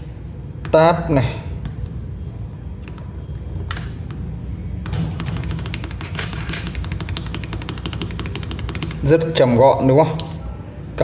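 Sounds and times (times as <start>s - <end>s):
mechanical keyboard keystrokes: 4.9s - 9.0s.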